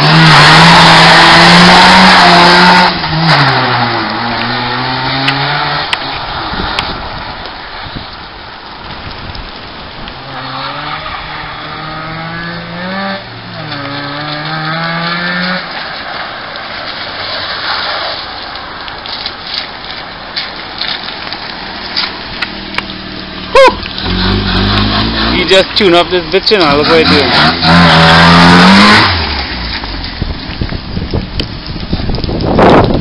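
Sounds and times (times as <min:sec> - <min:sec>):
rotary engine accelerating: 0:00.0 - 0:06.0, 0:10.3 - 0:15.6, 0:23.4 - 0:30.0
road noise: 0:00.0 - 0:33.0.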